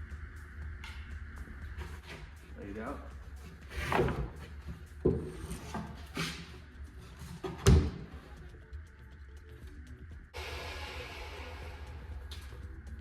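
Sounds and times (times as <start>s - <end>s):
wooden boards knocking and thumping: 7.4s - 8.1s.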